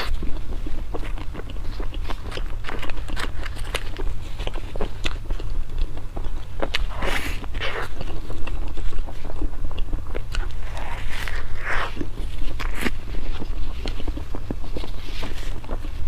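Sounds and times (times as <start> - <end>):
steady low hum: 0.0 - 16.0
wet chewing and mouth clicks: 0.0 - 16.0
slurping: 6.8 - 16.0.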